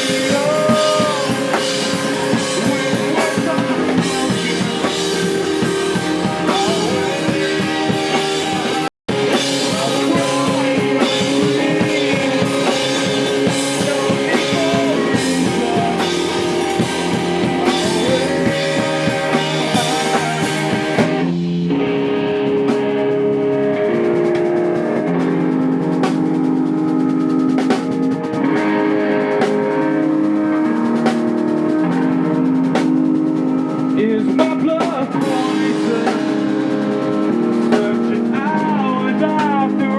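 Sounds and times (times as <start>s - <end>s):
held guitar chords ringing: 0.0s - 39.9s
live rock band playing: 0.0s - 39.9s.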